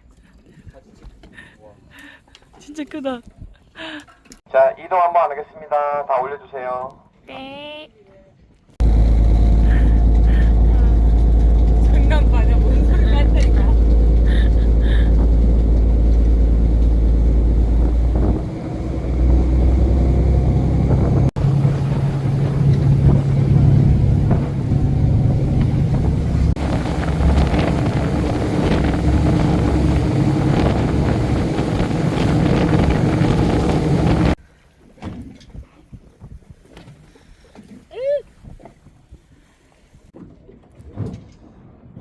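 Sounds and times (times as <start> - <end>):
boat engine rumbling: 8.8 - 40.6.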